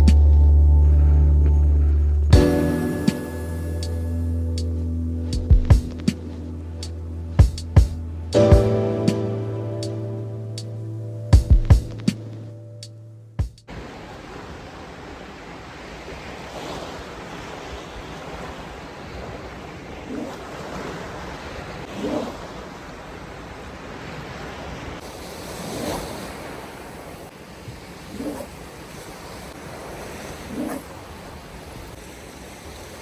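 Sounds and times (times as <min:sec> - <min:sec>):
wind blowing: 0:00.0 - 0:12.6, 0:13.7 - 0:33.0
surf washing onto beach: 0:13.7 - 0:33.0.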